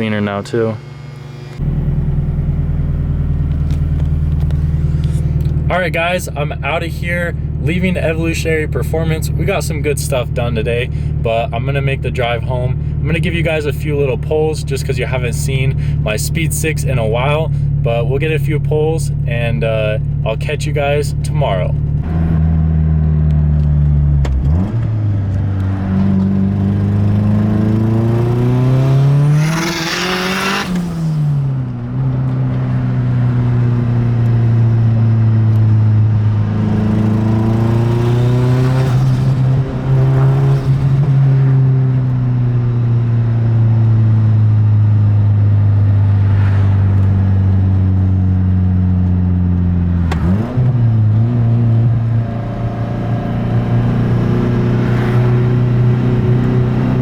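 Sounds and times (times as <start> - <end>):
car engine accelerating hard: 0.0 - 19.2, 20.4 - 57.0.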